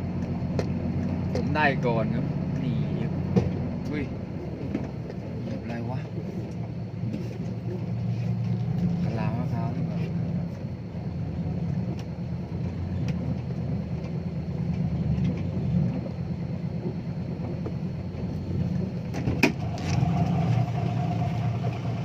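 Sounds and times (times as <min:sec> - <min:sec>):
truck engine running: 0:00.0 - 0:22.0.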